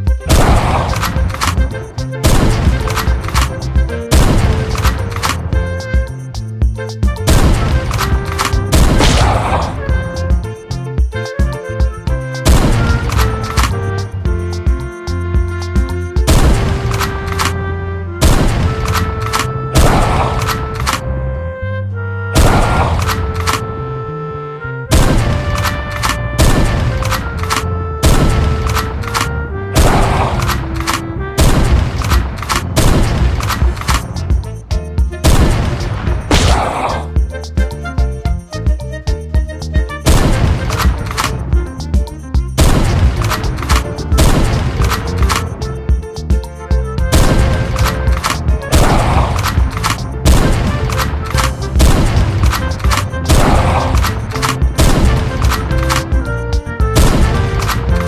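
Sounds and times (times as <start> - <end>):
heavy percussive hits: 0.0 - 17.5, 18.2 - 21.0, 22.4 - 23.4, 25.0 - 29.2, 29.8 - 30.7, 31.4 - 58.0
melody of held notes: 37.1 - 58.0.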